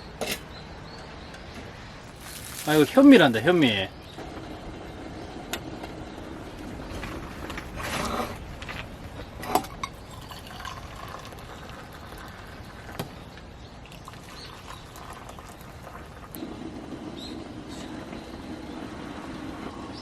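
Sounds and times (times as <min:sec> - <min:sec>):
wind: 0:00.0 - 0:20.0
rain: 0:01.6 - 0:20.0
water sloshing in a pot: 0:06.8 - 0:16.4.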